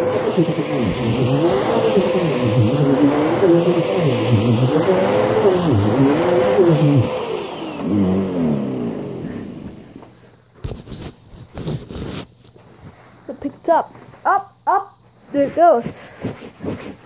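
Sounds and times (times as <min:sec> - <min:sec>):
vacuum cleaner motor whine: 0:00.0 - 0:10.3.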